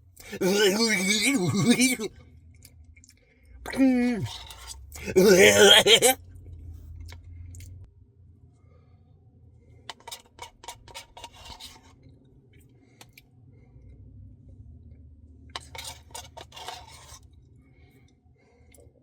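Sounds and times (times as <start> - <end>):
spoon scraping ice cream cup: 3.7 - 6.2, 9.9 - 12.0, 15.6 - 17.3
low steady hum: 12.1 - 16.1.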